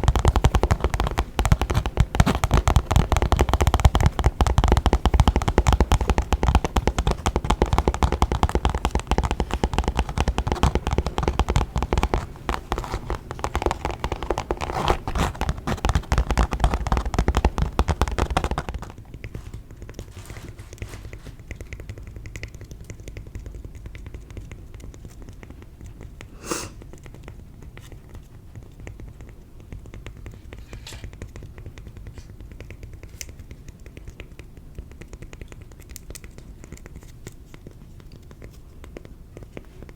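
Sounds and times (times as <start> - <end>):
tapping on makeup bag: 0.0 - 19.6
taps on cork: 0.0 - 20.1.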